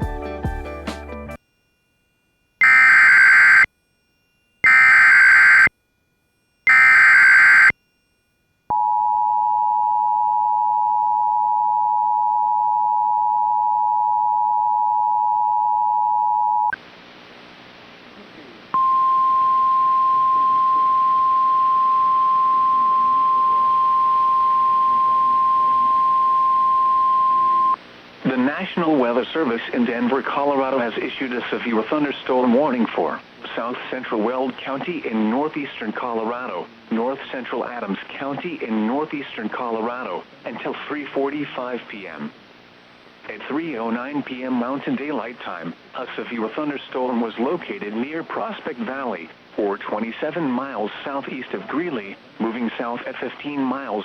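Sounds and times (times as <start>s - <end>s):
steady warning alarm tone: 1.4s - 16.7s
screechy digital bursts: 2.6s - 3.7s, 4.6s - 5.7s, 6.6s - 7.7s
two-tone attention signal: 2.6s - 3.7s, 4.6s - 5.7s, 6.7s - 7.7s.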